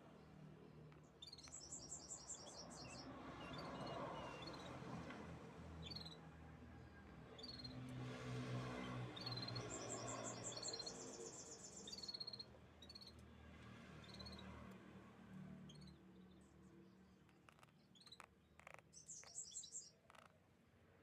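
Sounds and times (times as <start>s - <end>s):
canaries chirping: 9.2s - 13.2s, 17.4s - 20.3s.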